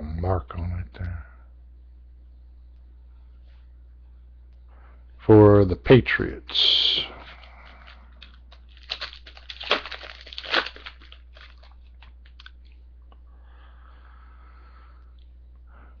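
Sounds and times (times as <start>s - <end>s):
foil wrapper tearing and crinkling: 7.3s - 12.6s.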